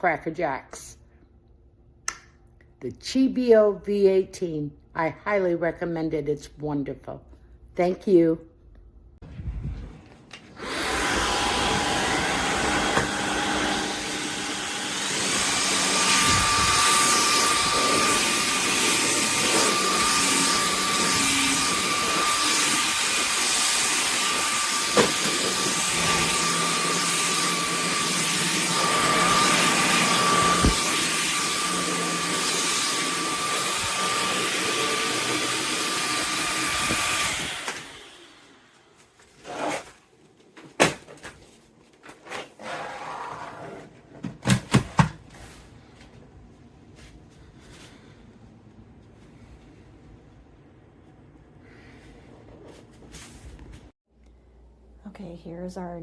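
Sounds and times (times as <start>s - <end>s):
stick vacuum cleaner whine: 10.0s - 39.8s.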